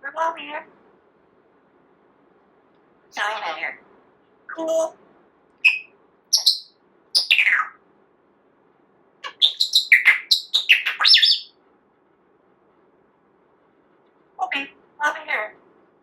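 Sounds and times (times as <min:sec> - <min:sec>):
parrot chirping and whistling: 0:05.6 - 0:07.7, 0:09.2 - 0:11.5.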